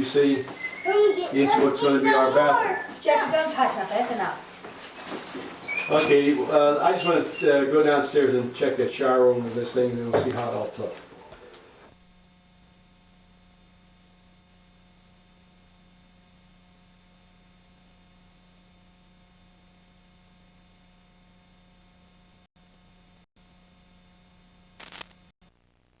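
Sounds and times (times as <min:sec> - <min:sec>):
thin high whine: 0:00.0 - 0:19.1
electrical mains hum: 0:00.0 - 0:25.9.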